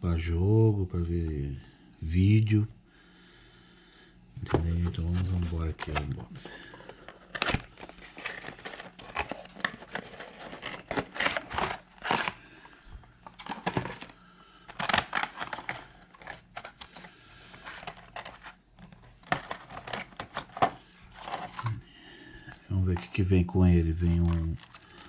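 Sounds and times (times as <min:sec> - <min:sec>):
packaging rustling and tearing: 0:04.8 - 0:21.8, 0:24.0 - 0:25.0.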